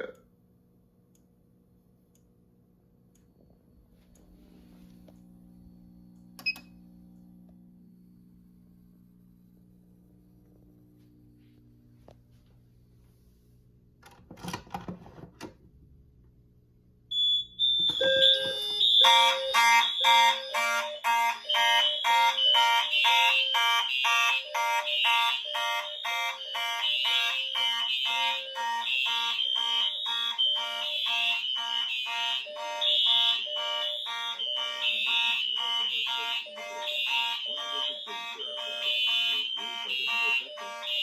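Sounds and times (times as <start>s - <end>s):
fire alarm horns pulsing: 17.1s - 41.0s
steady high tone: 24.3s - 41.0s.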